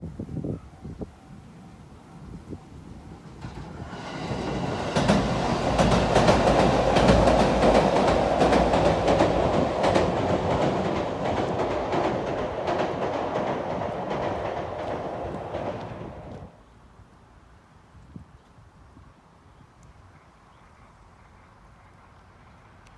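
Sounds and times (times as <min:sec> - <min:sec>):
train rumbling past: 0:02.1 - 0:16.6
wheels clacking over rail joints: 0:03.1 - 0:16.5.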